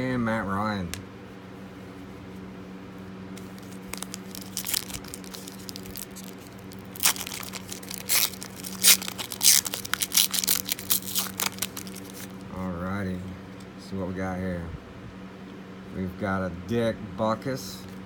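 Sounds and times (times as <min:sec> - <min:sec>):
card pack wrapper tearing: 0:03.4 - 0:12.4.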